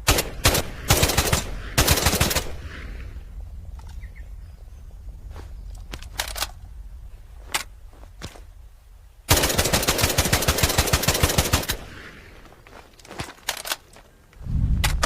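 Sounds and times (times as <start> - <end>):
rifle automatic fire: 0.0 - 2.6, 9.3 - 11.9
sharp clicks: 5.7 - 6.7, 13.2 - 15.0.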